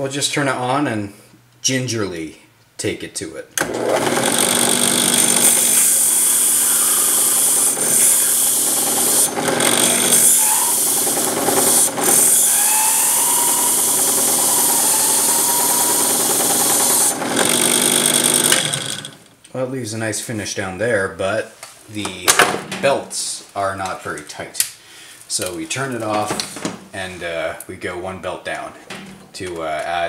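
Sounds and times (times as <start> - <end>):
drill press motor hum: 3.6 - 19.3
wire brush scrubbing copper pipe: 4.5 - 17.2.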